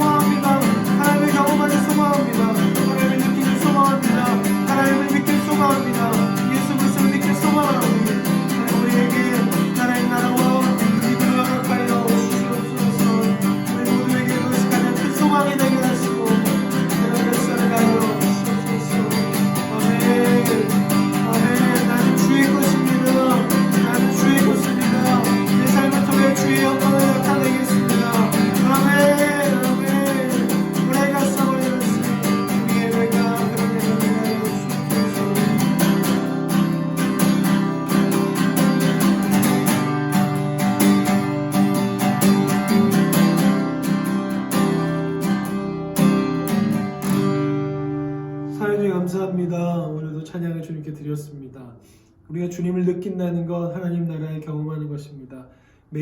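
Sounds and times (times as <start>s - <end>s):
person singing: 0.0s - 43.6s
strummed acoustic guitar: 0.0s - 52.3s.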